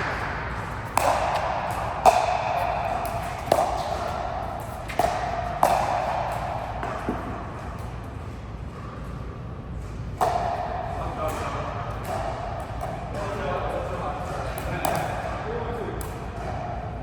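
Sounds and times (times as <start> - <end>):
racket hitting ball: 0.0 - 8.0, 10.2 - 13.4, 14.2 - 15.4.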